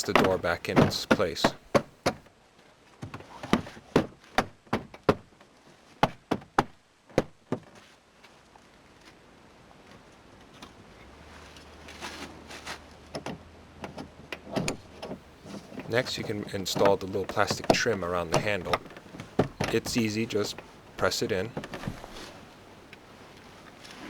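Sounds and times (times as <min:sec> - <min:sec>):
handling sounds: 0:00.0 - 0:02.3, 0:11.3 - 0:24.0.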